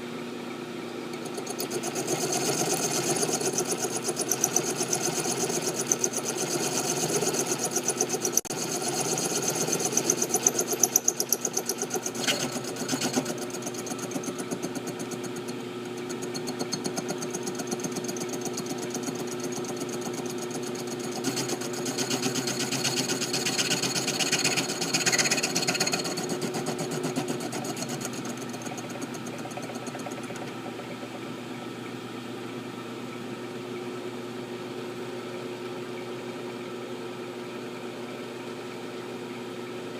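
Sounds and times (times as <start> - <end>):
milling machine cutting steel: 1.2 - 30.9.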